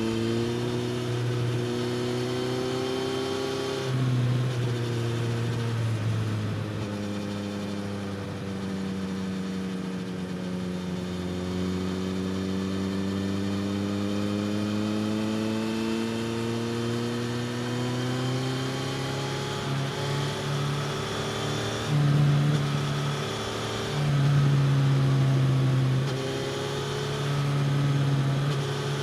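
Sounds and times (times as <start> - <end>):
motorcycle engine revving: 0.0 - 29.0.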